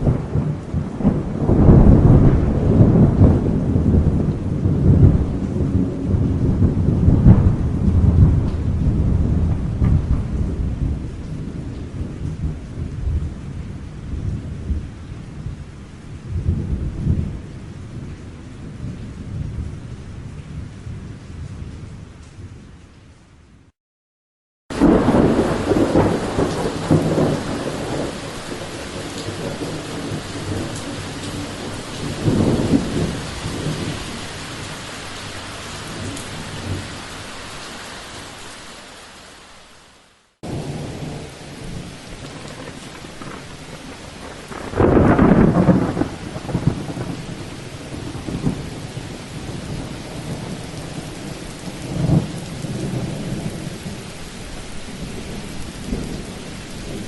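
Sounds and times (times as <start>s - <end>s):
thunder rolling: 0.0s - 13.4s, 24.7s - 36.9s, 40.4s - 54.0s
steady rain: 0.0s - 23.7s, 24.7s - 57.0s.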